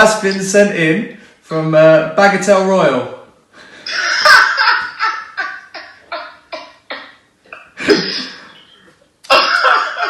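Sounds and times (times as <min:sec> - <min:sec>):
man laughing: 0:03.8 - 0:07.0, 0:07.6 - 0:10.0.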